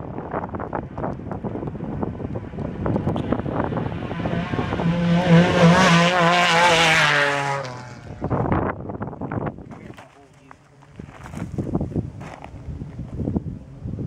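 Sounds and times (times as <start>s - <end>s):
off-road vehicle engine passing: 1.7s - 8.7s.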